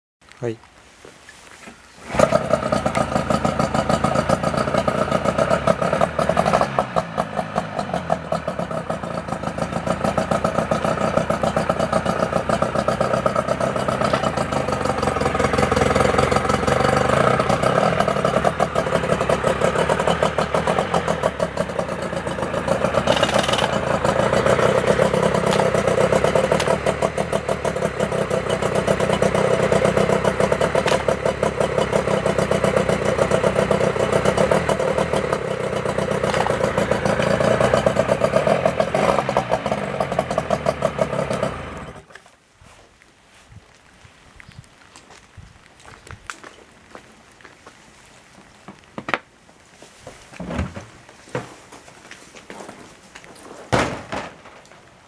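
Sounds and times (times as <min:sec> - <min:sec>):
outboard motor running: 0:02.0 - 0:42.1.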